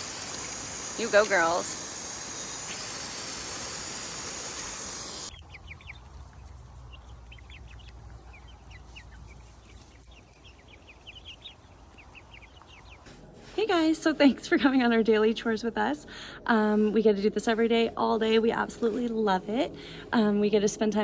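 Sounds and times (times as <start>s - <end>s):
rushing hiss of water: 0.0s - 5.3s
small birds chirping: 0.0s - 13.2s.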